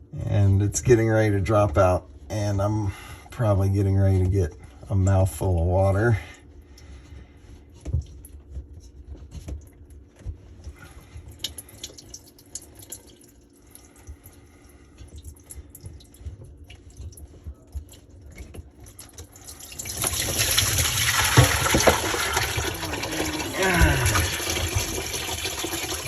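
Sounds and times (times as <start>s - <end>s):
water pouring out of drain: 19.0s - 26.0s.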